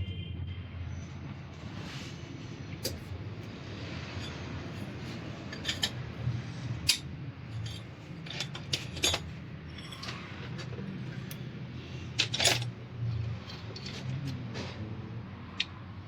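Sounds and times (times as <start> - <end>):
metal tools clinking: 4.2 - 6.2, 6.9 - 14.3.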